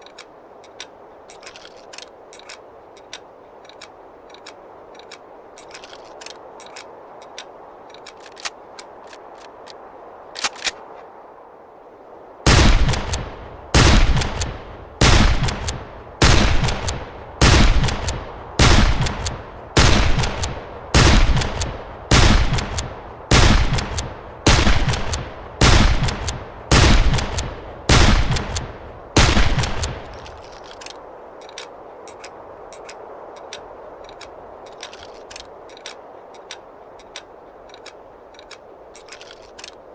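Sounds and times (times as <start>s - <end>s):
faint clicks: 0.0s - 11.1s, 29.6s - 39.9s
rifle shots with ringing tail: 12.5s - 30.1s.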